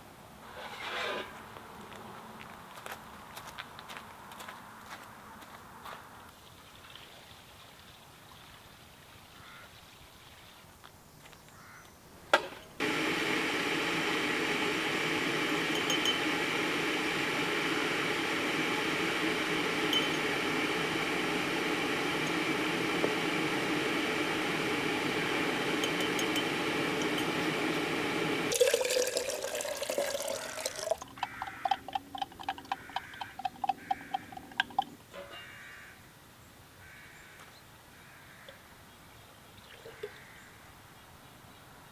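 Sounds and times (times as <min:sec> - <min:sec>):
water running into a vessel: 0:12.8 - 0:35.0.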